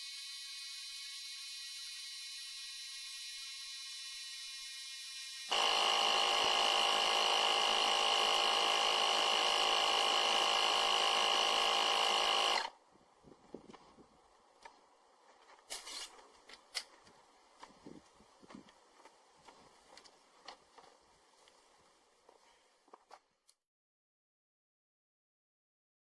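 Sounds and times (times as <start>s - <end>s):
compressor motor whining: 0.0s - 12.7s.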